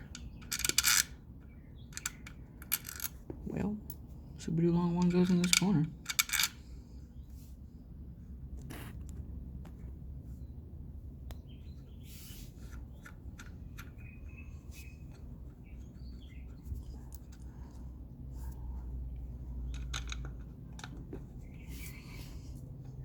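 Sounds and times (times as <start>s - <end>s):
metallic clicks of screws: 0.0s - 1.2s, 1.9s - 3.2s, 5.0s - 6.6s.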